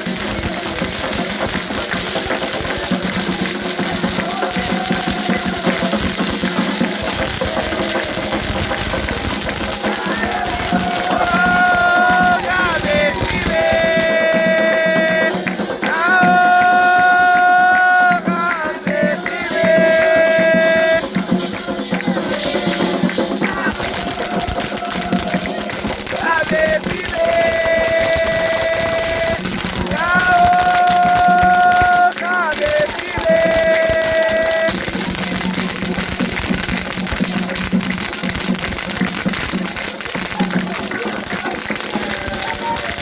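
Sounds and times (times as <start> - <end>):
drumming: 0.0 - 43.0
person singing: 9.8 - 34.9.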